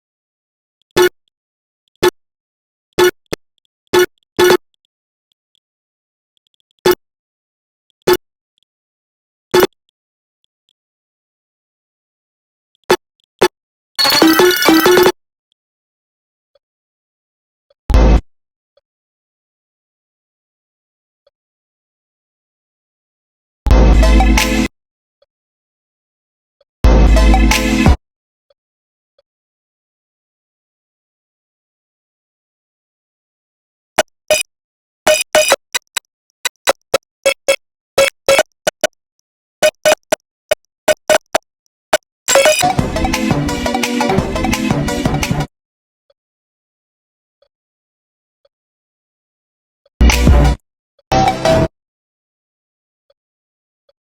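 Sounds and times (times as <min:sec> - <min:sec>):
bass-heavy music burst: 0:23.7 - 0:24.7, 0:26.9 - 0:28.0, 0:42.6 - 0:45.5, 0:50.0 - 0:51.7
short sharp clicks: 0:35.1 - 0:38.9.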